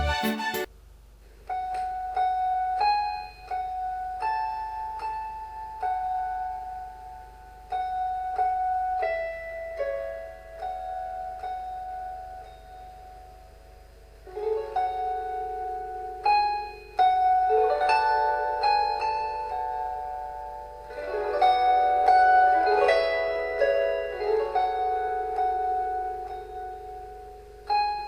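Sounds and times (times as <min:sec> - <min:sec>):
slow piano melody: 0:14.3 - 0:28.0.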